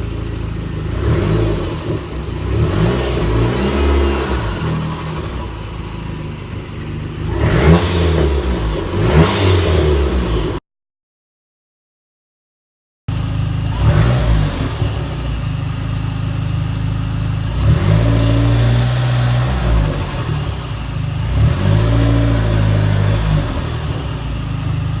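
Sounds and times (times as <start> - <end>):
car engine idling and revving: 0.0 - 10.6, 13.1 - 25.0.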